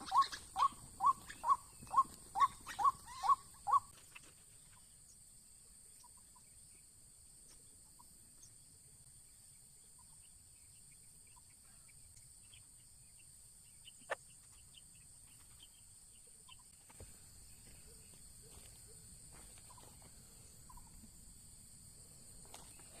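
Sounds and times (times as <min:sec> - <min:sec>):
high insect drone: 0:04.6 - 0:23.0.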